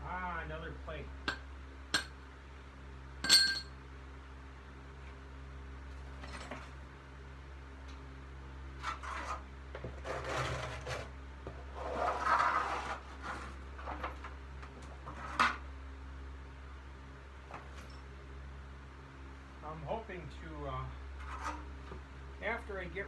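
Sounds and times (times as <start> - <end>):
steady low hum: 0.0 - 23.0
objects rubbing and scraping: 8.7 - 15.7, 21.2 - 21.9.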